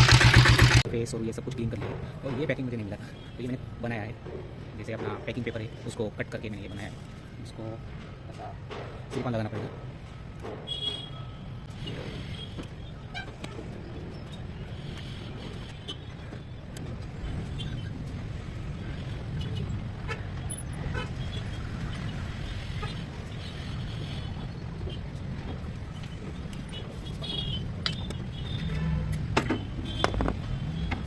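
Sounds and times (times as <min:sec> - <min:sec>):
diesel engine idling: 0:00.0 - 0:00.8.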